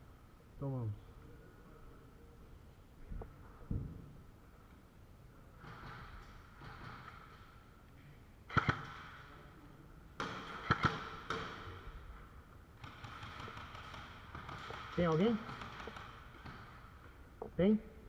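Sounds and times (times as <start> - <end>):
airsoft gun shots: 8.5 - 9.2, 10.2 - 11.8.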